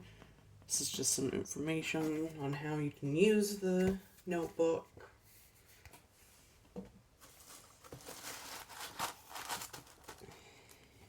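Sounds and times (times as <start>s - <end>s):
paper rustling: 7.2s - 10.9s.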